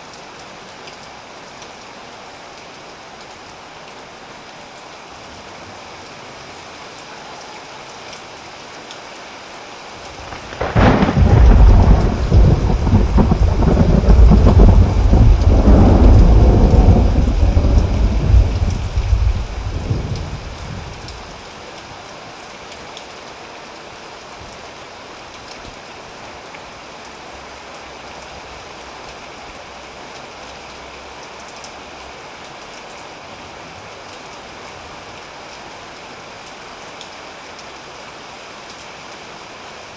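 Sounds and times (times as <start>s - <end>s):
steady heavy rain: 0.0s - 39.9s
thunder rumbling: 10.2s - 21.2s.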